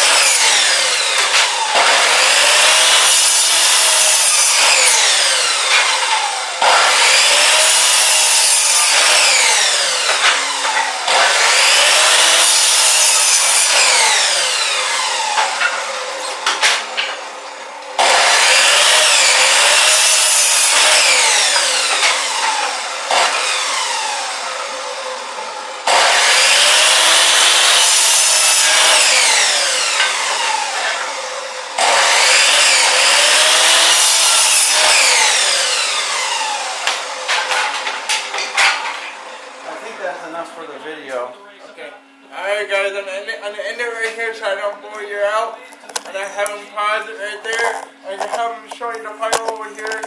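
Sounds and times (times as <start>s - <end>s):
chop saw cutting wood: 0.0s - 17.3s, 18.0s - 24.8s, 25.8s - 39.2s, 47.5s - 50.0s.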